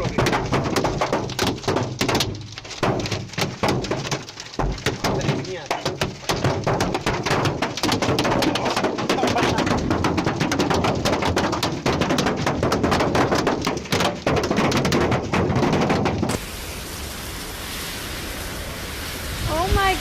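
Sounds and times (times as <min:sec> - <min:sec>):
hailstones striking hard surface: 0:00.0 - 0:16.5
steady rushing noise: 0:07.0 - 0:20.0.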